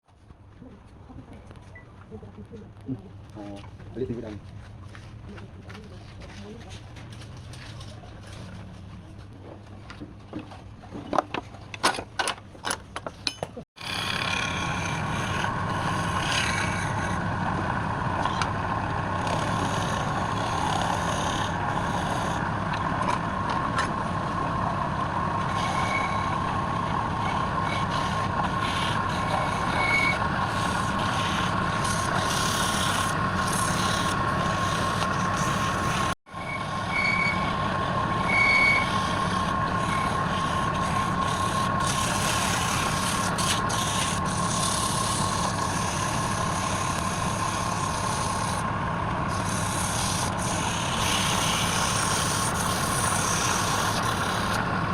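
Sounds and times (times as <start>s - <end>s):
woodturning lathe whining: 13.8s - 54.9s.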